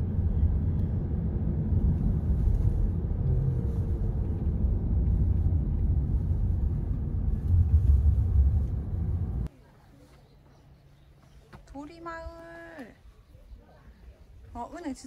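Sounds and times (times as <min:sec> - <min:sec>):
low rumble: 0:00.0 - 0:09.5.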